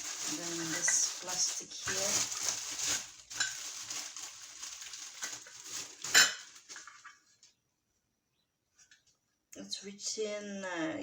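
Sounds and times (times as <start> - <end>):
plastic wrapping rustling: 0.0 - 7.6.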